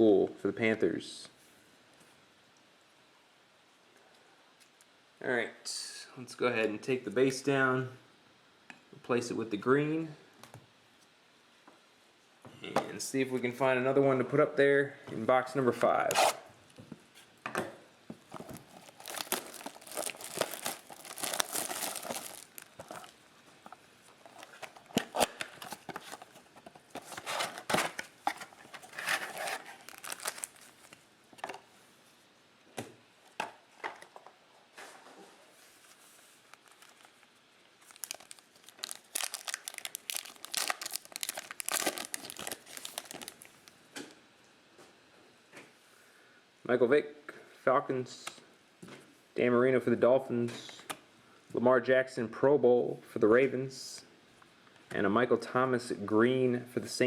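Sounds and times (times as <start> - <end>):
card pack wrappers crinkling: 18.3 - 23.3, 24.0 - 31.0, 36.4 - 43.8.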